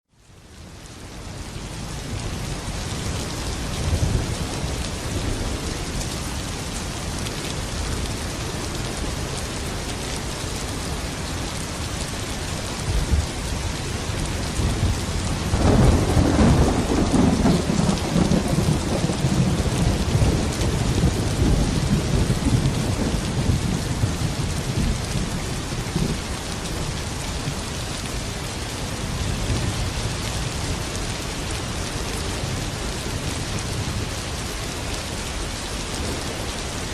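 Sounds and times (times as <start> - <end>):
heavy rain falling: 0.2 - 36.9
thunder rumbling: 14.4 - 27.0.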